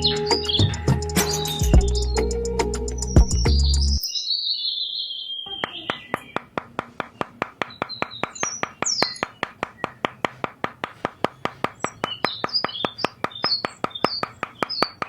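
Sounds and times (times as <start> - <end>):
small birds chirping: 0.0 - 15.0
rapid even tapping: 5.6 - 15.0.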